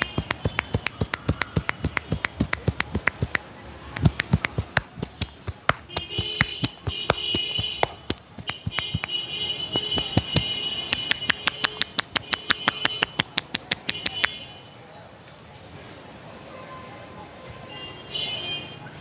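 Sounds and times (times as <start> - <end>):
hands slapping on a head: 0.0 - 3.4, 4.0 - 14.4.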